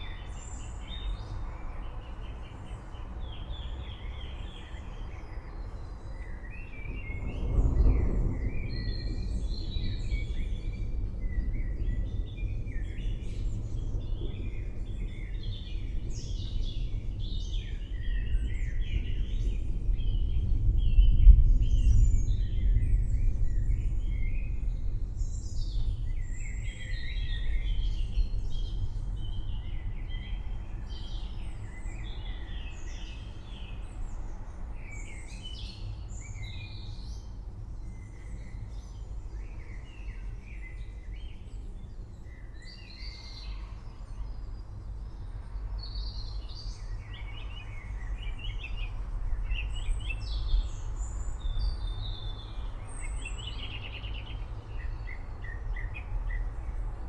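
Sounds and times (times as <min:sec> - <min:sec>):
thunder rumbling: 0:06.8 - 0:15.2.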